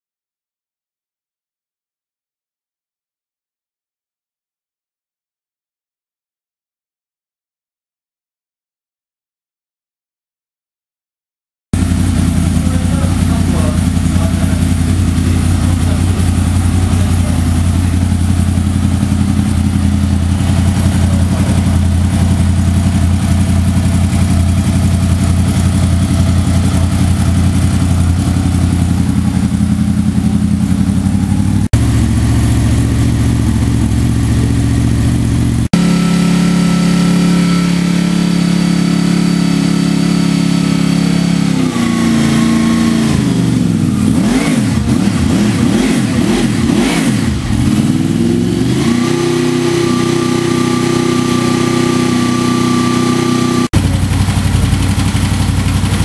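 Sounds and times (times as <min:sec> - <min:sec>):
motorcycle engine revving: 0:11.8 - 0:56.0.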